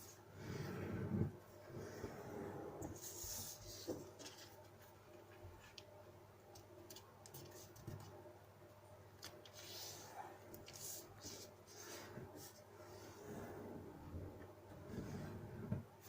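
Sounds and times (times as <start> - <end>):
paper rustling being folded: 9.2 - 11.8.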